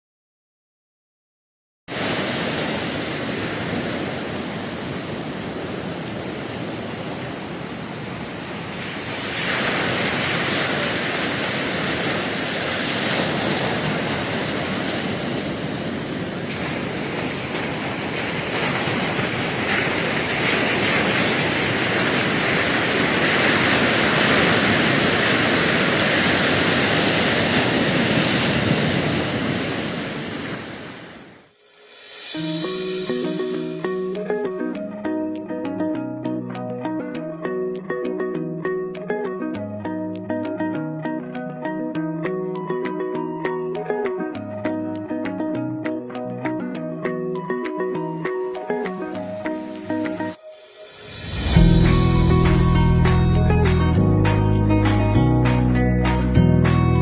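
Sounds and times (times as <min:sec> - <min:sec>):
waves breaking on shore: 0:01.9 - 0:34.3, 0:46.4 - 0:56.3.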